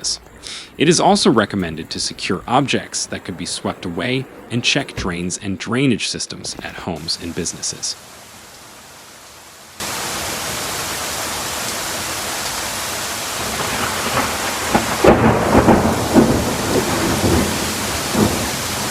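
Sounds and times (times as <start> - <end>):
rumbling thunder: 0.0 - 5.8, 13.3 - 18.9
heavy rain hissing: 0.0 - 18.9.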